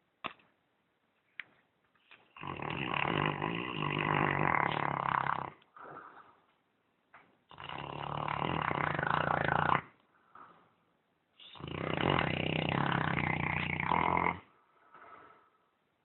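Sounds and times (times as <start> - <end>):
dog snoring loudly: 2.4 - 6.0, 7.5 - 10.0, 11.4 - 14.6.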